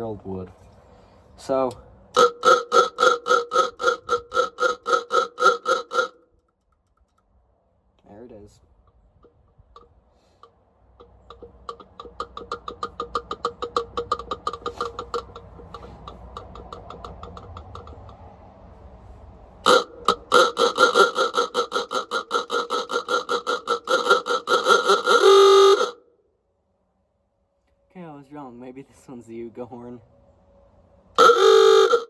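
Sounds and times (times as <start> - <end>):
horn rattling buzz: 0.0 - 6.4, 9.3 - 26.1, 30.2 - 32.0
electric car horn honking: 2.2 - 6.2, 19.6 - 26.1, 31.1 - 32.0.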